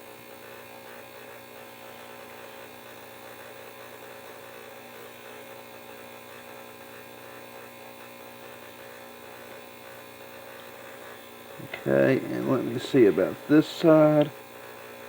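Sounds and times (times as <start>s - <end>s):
electrical hum: 10.5s - 15.0s.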